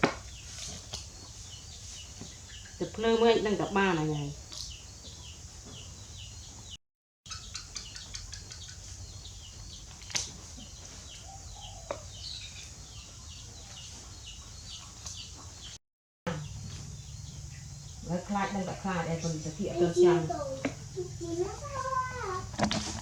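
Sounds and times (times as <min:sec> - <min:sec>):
bird chirping: 0:00.2 - 0:22.6
low steady hum: 0:16.3 - 0:22.6.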